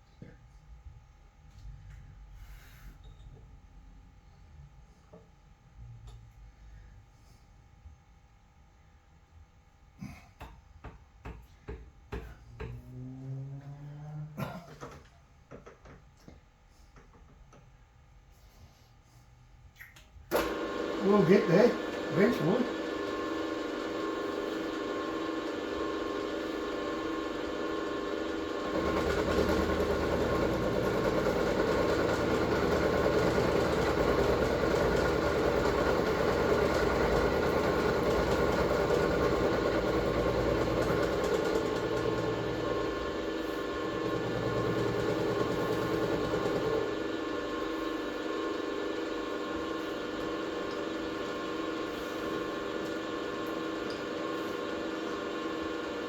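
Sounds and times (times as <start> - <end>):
steady mechanical hum: 0.0 - 56.0
workshop machine running: 20.3 - 56.0.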